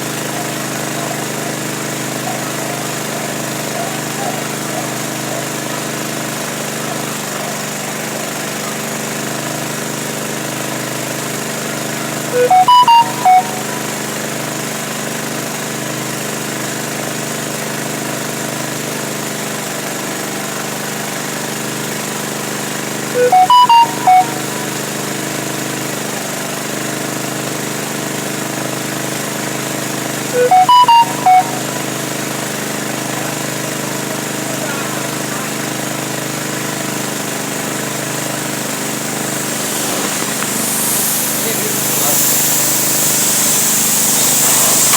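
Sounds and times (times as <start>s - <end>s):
short electronic tune: 12.4s - 14.1s, 23.2s - 24.9s, 30.4s - 32.1s.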